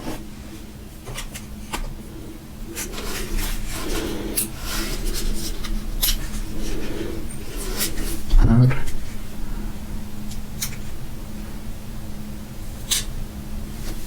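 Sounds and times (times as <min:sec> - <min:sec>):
plastic packaging rubbing and rustling: 0:00.0 - 0:08.3.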